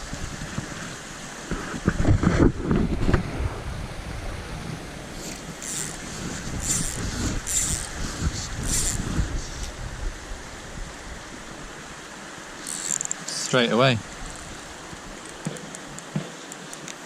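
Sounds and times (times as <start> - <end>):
wind on microphone: 0.0 - 12.0
moving water: 0.0 - 17.0.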